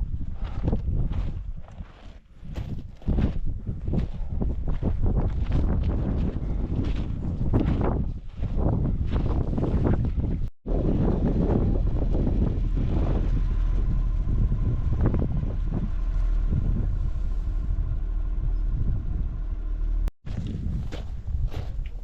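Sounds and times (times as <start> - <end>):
wind buffeting microphone: 0.0 - 22.0
footsteps on loose scree: 0.4 - 10.4.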